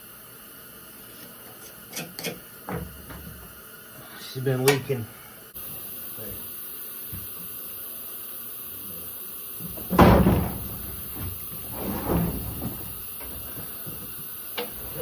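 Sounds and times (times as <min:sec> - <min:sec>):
steady hiss: 0:00.0 - 0:15.0
hand tools knocking and scraping: 0:01.9 - 0:03.4, 0:09.7 - 0:15.0
loud metal clunk: 0:09.7 - 0:14.0.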